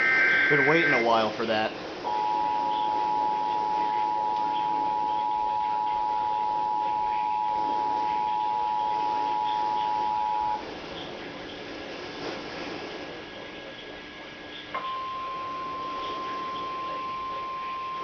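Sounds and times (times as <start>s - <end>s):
two-tone alarm: 0.0s - 10.6s, 14.7s - 18.0s.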